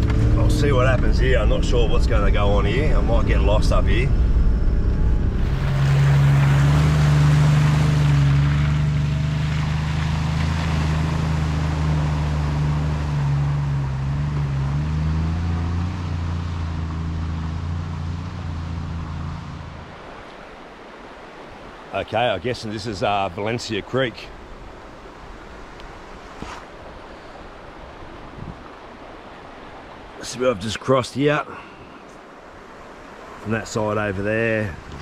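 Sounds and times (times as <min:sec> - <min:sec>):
rushing noise: 0:00.0 - 0:13.6
vehicle engine driving: 0:00.0 - 0:20.6.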